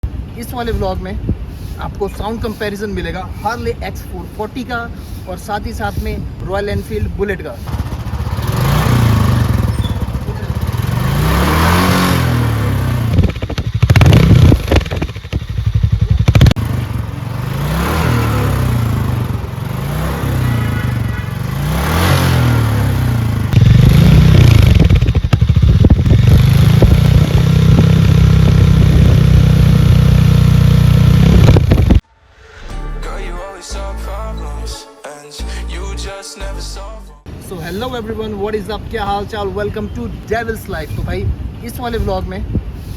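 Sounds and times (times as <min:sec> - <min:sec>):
motorcycle engine revving: 0:07.7 - 0:32.0.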